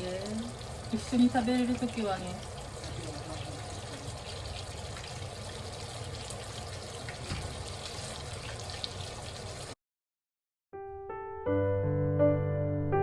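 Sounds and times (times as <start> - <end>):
running water: 0.0 - 9.8.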